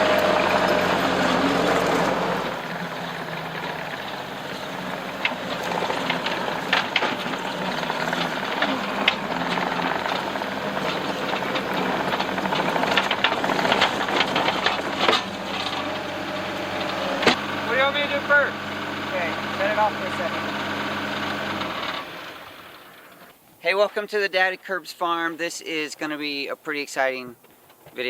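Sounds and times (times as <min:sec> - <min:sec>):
metallic knocks and clanks: 0:00.0 - 0:22.2
diesel engine running: 0:00.0 - 0:23.4.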